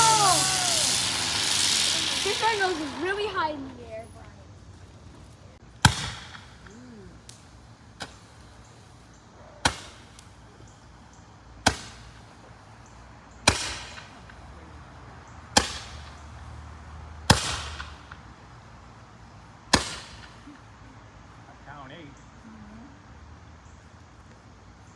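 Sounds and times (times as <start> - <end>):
fireworks bangs with crackling: 0.0 - 9.0, 9.6 - 10.4, 11.6 - 12.5, 13.4 - 14.8, 15.5 - 16.6, 17.2 - 18.3, 19.7 - 20.5.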